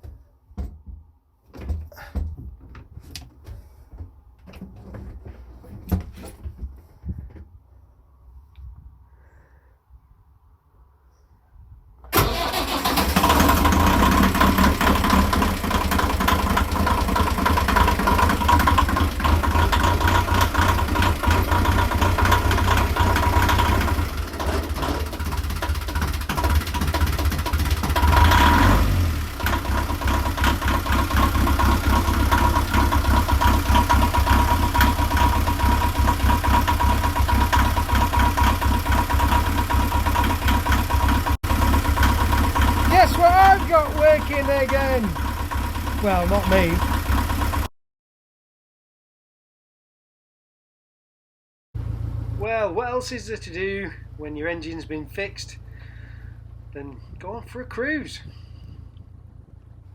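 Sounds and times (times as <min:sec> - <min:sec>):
boat engine chugging: 0:29.7 - 0:47.7.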